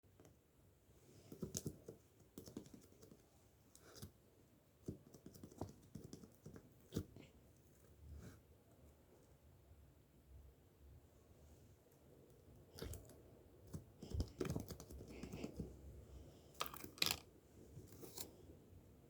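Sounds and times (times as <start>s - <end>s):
faint irregular clicks and taps: 1.1s - 7.7s, 12.7s - 15.8s.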